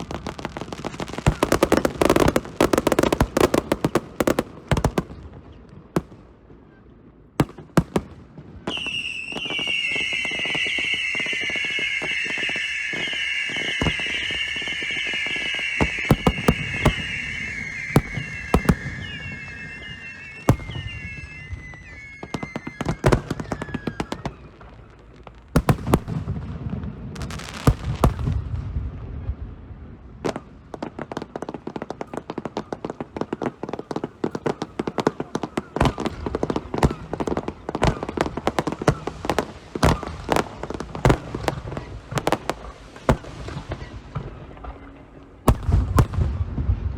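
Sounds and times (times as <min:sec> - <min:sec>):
crackling firework bursts: 0:00.0 - 0:06.8, 0:07.4 - 0:46.9
sharp firework bangs: 0:07.4 - 0:24.3, 0:25.6 - 0:28.9, 0:45.5 - 0:46.9
high wavering firework whistles: 0:08.7 - 0:24.9, 0:33.3 - 0:41.5.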